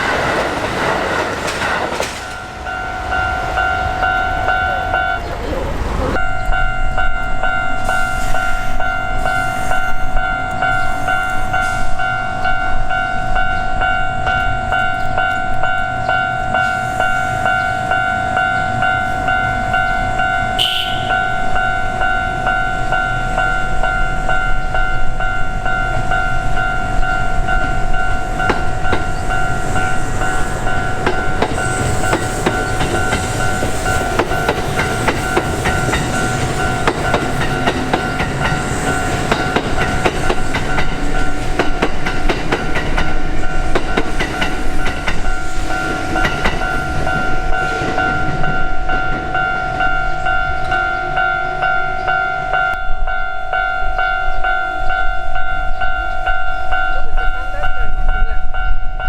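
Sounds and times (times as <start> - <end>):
train wheels clacking: 0.0 - 51.1.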